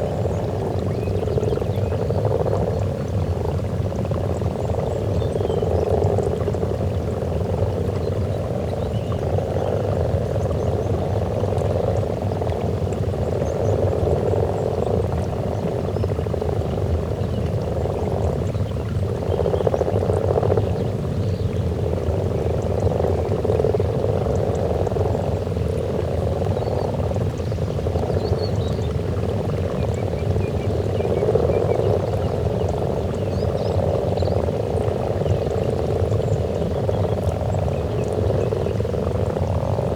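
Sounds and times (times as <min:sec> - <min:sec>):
frogs croaking: 0:00.0 - 0:39.9.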